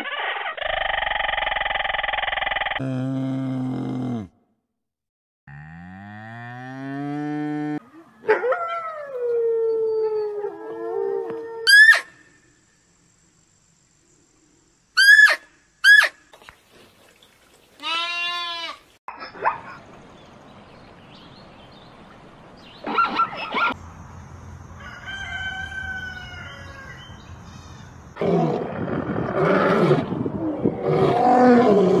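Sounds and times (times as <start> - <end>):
background hiss: 12.0 - 19.0
animal calls: 22.8 - 23.8.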